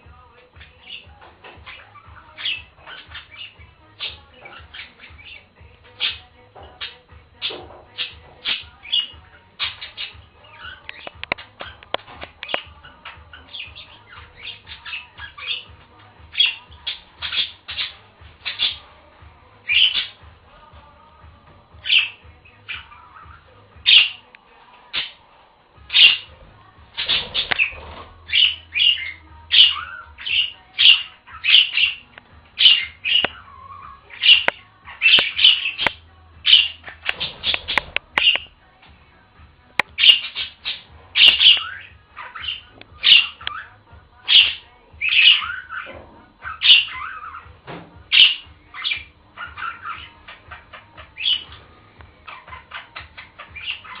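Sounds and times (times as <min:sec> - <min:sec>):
budgerigars chirping and squawking: 0:00.0 - 0:38.9, 0:39.7 - 0:54.0.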